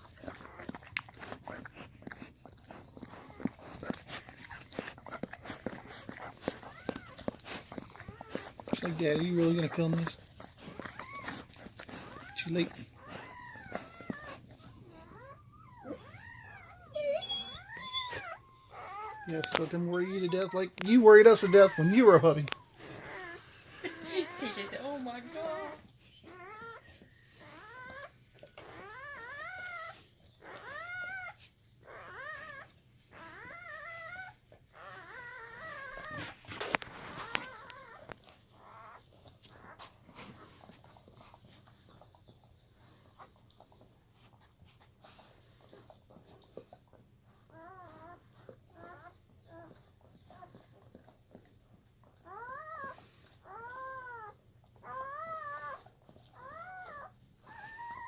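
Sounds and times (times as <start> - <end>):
puppies whimpering cries: 0.0 - 58.0.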